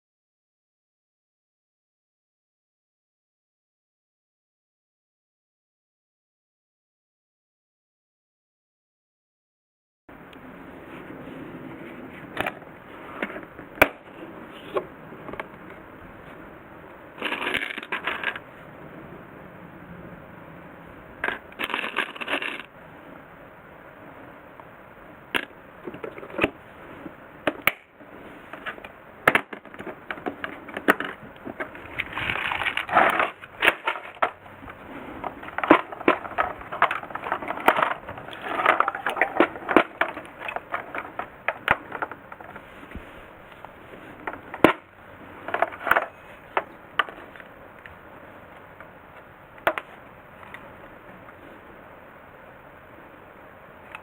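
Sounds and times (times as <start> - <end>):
hard objects clicking and knocking: 28.6 - 42.7, 43.6 - 47.5.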